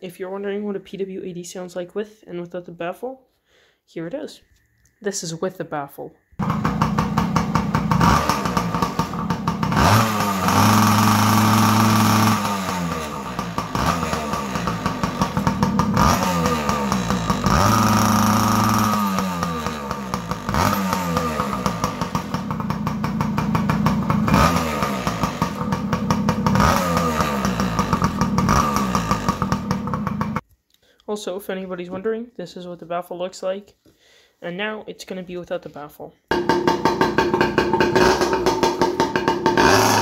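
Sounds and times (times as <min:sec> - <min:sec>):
two-stroke engine idling and revving: 0:06.4 - 0:30.4, 0:36.3 - 0:40.0.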